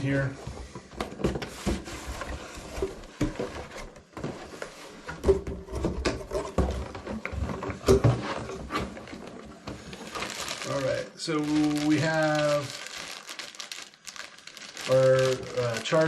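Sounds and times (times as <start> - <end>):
cardboard box being opened: 10.0 - 16.0.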